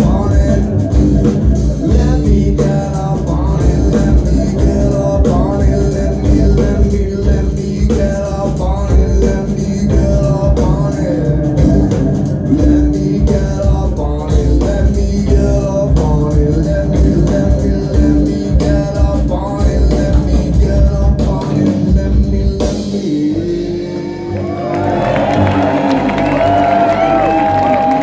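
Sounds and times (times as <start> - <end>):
live rock band playing: 0.0 - 28.0
audience cheering and whistling: 23.9 - 28.0.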